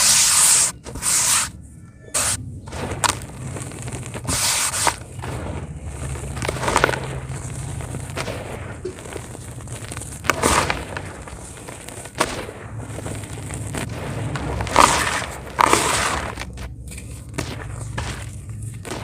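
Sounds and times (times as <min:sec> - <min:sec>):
cement crumbling and crunching: 0:00.0 - 0:19.0
steady low rumble: 0:00.0 - 0:19.0.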